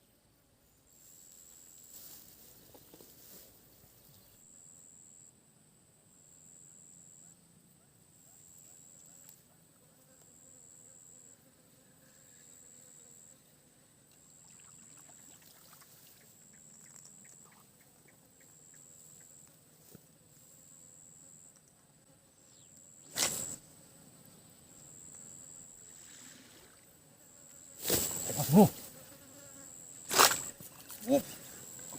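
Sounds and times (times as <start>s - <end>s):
insect buzzing: 8.2s - 31.9s.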